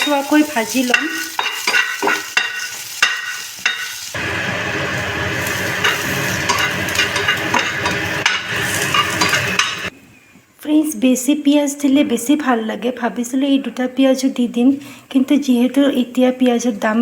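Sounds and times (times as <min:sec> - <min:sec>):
spatula scraping pan: 0:00.0 - 0:04.2, 0:04.8 - 0:09.9
onions sizzling in oil: 0:00.0 - 0:09.9.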